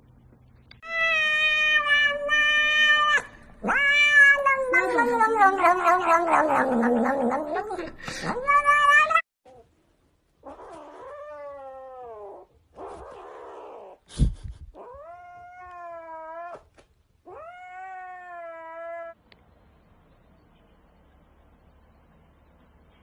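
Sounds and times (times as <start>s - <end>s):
cat yowling: 0.8s - 9.6s, 10.4s - 14.0s, 14.8s - 16.7s, 17.3s - 19.2s.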